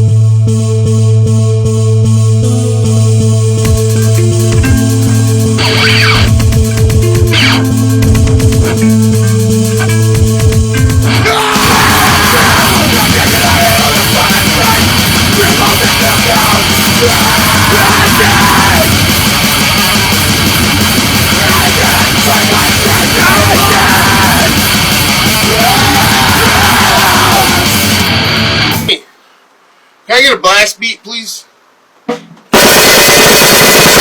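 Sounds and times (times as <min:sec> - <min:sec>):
heavy metal music: 0:00.0 - 0:29.0, 0:32.6 - 0:34.0
person yelling vocals: 0:11.1 - 0:20.3, 0:21.1 - 0:24.6, 0:25.2 - 0:27.9.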